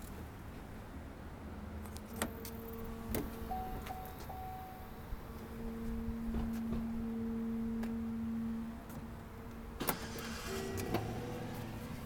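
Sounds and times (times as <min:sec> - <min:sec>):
low electronic warning tone: 0:02.3 - 0:09.8, 0:10.4 - 0:12.0.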